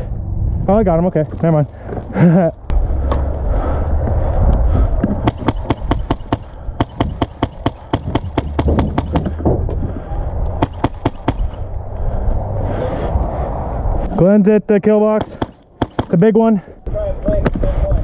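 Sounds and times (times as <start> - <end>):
airsoft rifle shots: 5.2 - 9.3, 10.6 - 11.6, 15.2 - 16.3.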